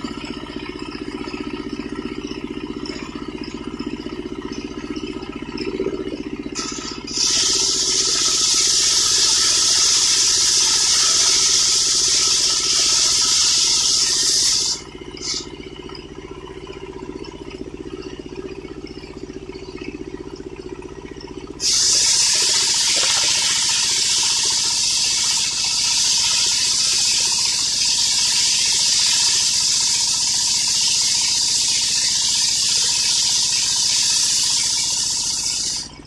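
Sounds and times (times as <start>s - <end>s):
sawmill engine idling: 0.0s - 36.0s
saw blade cutting log: 6.6s - 15.5s, 21.6s - 35.9s.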